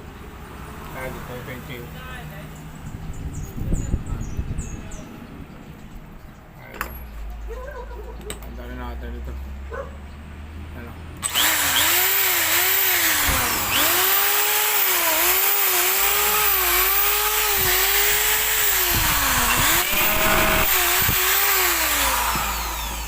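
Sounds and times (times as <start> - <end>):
electric drill motor whining: 11.2 - 23.0.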